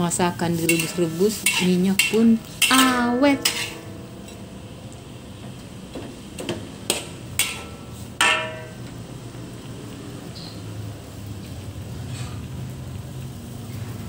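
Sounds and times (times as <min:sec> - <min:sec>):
low steady hum: 0:00.0 - 0:09.8
metal utensil clinking against pot: 0:00.7 - 0:04.5, 0:06.9 - 0:08.9.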